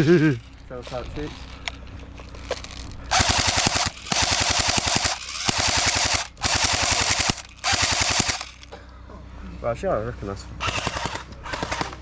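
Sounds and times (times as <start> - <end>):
airsoft gun firing bursts: 3.1 - 8.6, 10.6 - 12.0.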